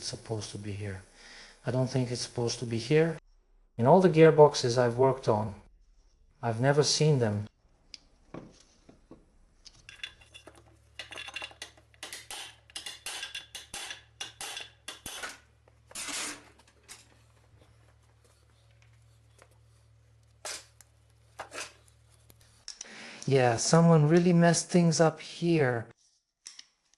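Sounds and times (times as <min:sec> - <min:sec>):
metallic clinks and scrapes: 0:09.7 - 0:22.7.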